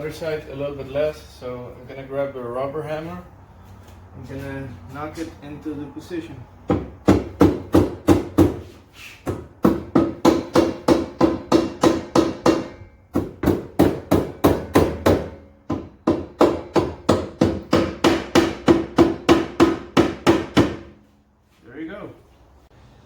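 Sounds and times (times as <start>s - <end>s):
rubber mallet striking metal: 9.6s - 20.9s.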